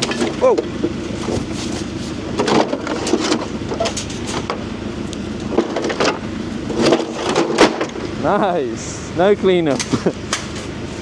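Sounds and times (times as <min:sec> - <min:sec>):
debris clattering on metal: 0:00.0 - 0:04.6, 0:05.5 - 0:08.0
diesel engine running: 0:00.0 - 0:11.0.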